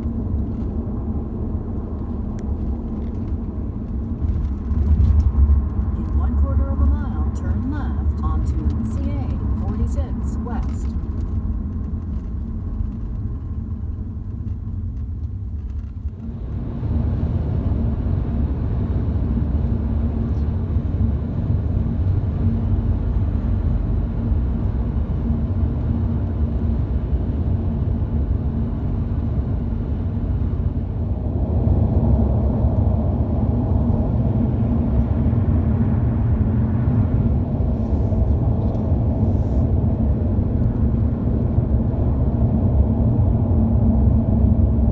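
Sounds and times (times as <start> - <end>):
car road and engine rumble: 0.0 - 44.9.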